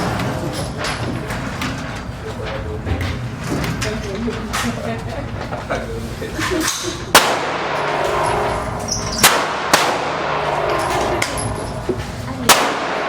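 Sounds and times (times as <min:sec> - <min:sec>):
gunshots with ringing echo: 0:07.2 - 0:11.8, 0:12.5 - 0:13.0.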